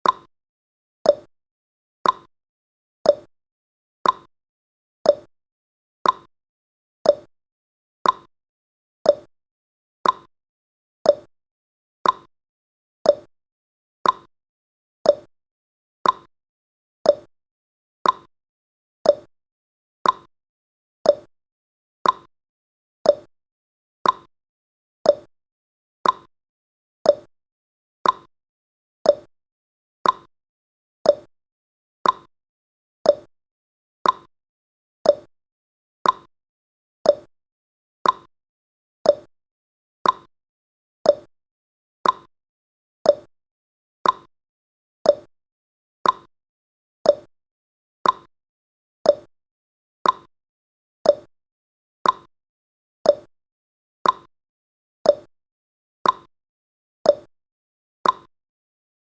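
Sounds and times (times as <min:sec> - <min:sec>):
timer ticking: 0:00.0 - 0:00.3, 0:01.1 - 0:01.3, 0:02.0 - 0:02.3, 0:03.1 - 0:03.3, 0:04.0 - 0:04.3, 0:05.1 - 0:05.3, 0:06.0 - 0:06.3, 0:07.1 - 0:07.3, 0:08.0 - 0:08.3, 0:09.1 - 0:09.3, 0:10.0 - 0:10.3, 0:11.1 - 0:11.3, 0:12.0 - 0:12.3, 0:13.1 - 0:13.3, 0:14.0 - 0:14.3, 0:15.1 - 0:15.3, 0:16.0 - 0:16.3, 0:17.1 - 0:17.3, 0:18.0 - 0:18.3, 0:19.0 - 0:19.3, 0:20.0 - 0:20.3, 0:21.1 - 0:21.3, 0:22.0 - 0:22.3, 0:23.1 - 0:23.3, 0:24.0 - 0:24.3, 0:25.1 - 0:25.3, 0:26.0 - 0:26.3, 0:27.1 - 0:27.3, 0:28.0 - 0:28.3, 0:29.1 - 0:29.3, 0:30.0 - 0:30.3, 0:31.1 - 0:31.3, 0:32.0 - 0:32.3, 0:33.1 - 0:33.3, 0:34.0 - 0:34.3, 0:35.0 - 0:35.3, 0:36.0 - 0:36.3, 0:37.1 - 0:37.3, 0:38.0 - 0:38.3, 0:39.1 - 0:39.3, 0:40.0 - 0:40.3, 0:41.1 - 0:41.3, 0:42.0 - 0:42.3, 0:43.1 - 0:43.3, 0:44.0 - 0:44.3, 0:45.1 - 0:45.3, 0:46.0 - 0:46.3, 0:47.1 - 0:47.3, 0:48.0 - 0:48.3, 0:49.1 - 0:49.3, 0:50.0 - 0:50.3, 0:51.1 - 0:51.3, 0:52.0 - 0:52.3, 0:53.1 - 0:53.3, 0:54.0 - 0:54.3, 0:55.1 - 0:55.3, 0:56.0 - 0:56.3, 0:57.1 - 0:57.3, 0:58.0 - 0:58.3.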